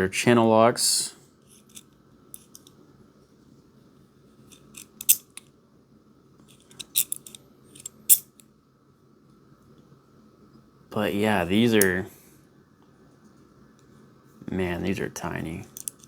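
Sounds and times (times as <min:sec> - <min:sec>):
pliers clicking: 0:04.5 - 0:05.4, 0:15.8 - 0:16.0.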